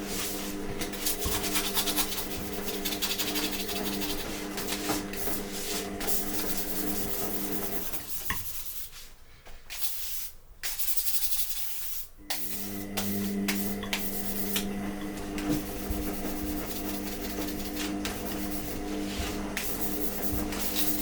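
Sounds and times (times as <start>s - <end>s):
steady hum: 12.2s - 21.0s.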